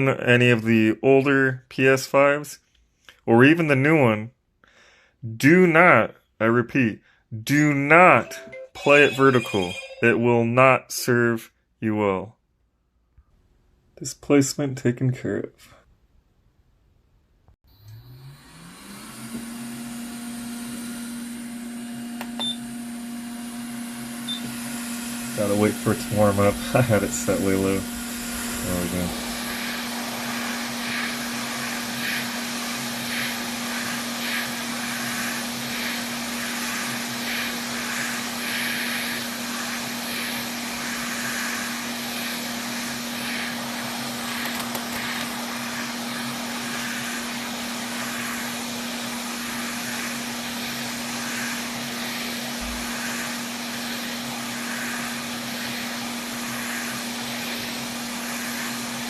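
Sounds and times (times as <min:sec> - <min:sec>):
hot air rework station blowing: 0:18.2 - 0:59.0.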